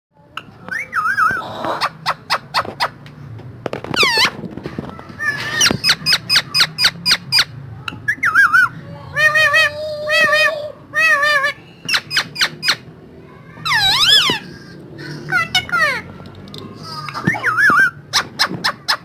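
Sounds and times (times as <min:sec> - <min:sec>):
parakeet chirping: 0:11.9 - 0:12.8
parakeet whistled calls: 0:17.3 - 0:18.0.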